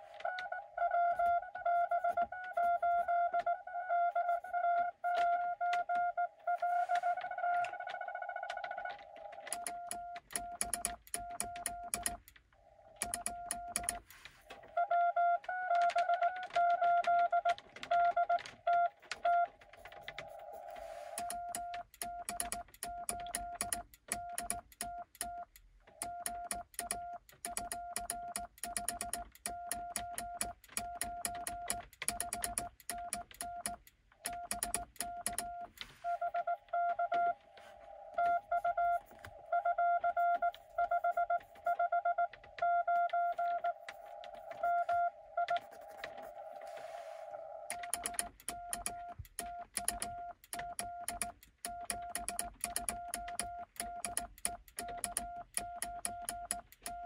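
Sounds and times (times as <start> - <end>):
morse code beep tone: 0.2 - 8.7, 9.5 - 12.2, 13.0 - 14.0, 14.7 - 19.5, 20.3 - 57.0
morse key clicks: 9.4 - 14.1, 21.1 - 35.8, 47.7 - 57.0.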